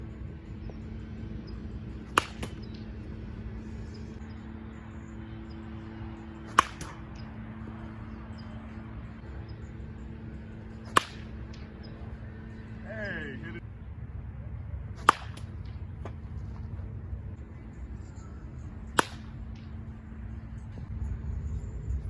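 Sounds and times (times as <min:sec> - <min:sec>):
steady low hum: 0:00.0 - 0:22.0
baseball bat cracking ball: 0:01.8 - 0:03.2, 0:06.2 - 0:08.6, 0:10.3 - 0:12.2, 0:15.0 - 0:16.4, 0:18.8 - 0:19.8.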